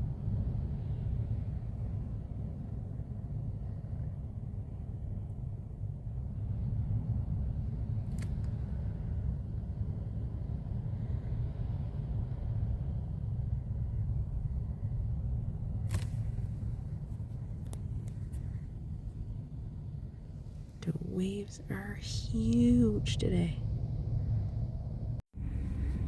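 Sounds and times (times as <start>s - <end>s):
gale-force wind buffeting: 0.0s - 26.0s.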